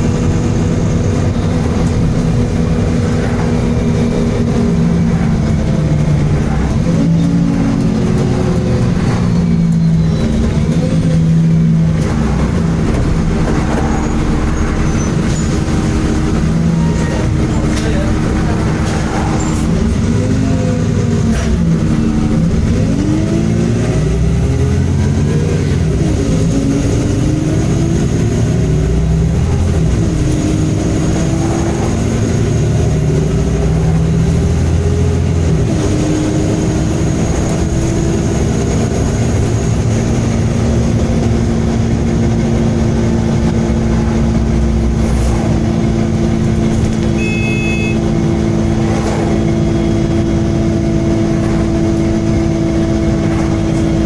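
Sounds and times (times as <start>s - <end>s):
bus diesel engine running: 0.0s - 54.0s
short high beep: 47.2s - 48.0s.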